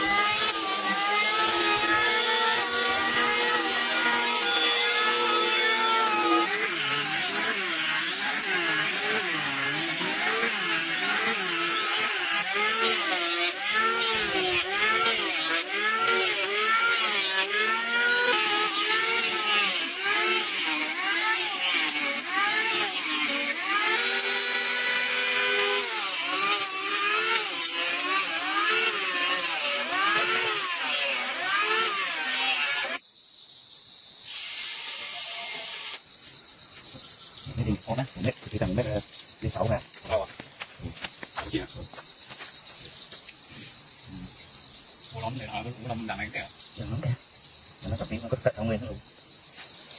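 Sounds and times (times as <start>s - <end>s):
power saw cutting wood: 0.0s - 33.0s, 34.3s - 36.0s.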